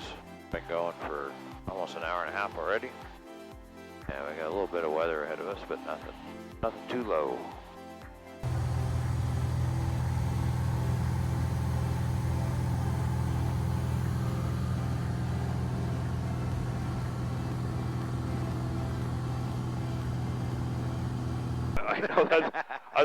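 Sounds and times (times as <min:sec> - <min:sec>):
light aircraft engine droning: 0:08.4 - 0:21.8.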